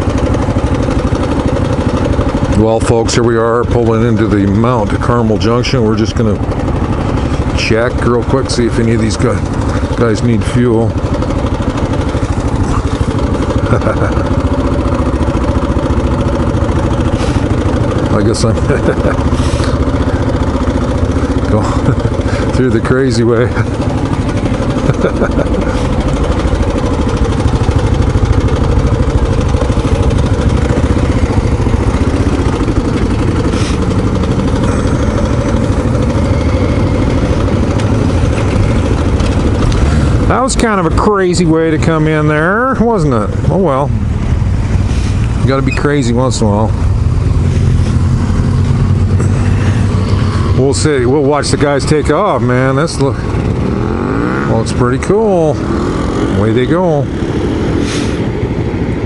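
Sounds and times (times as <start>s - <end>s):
motorcycle engine idling: 0.0s - 59.0s.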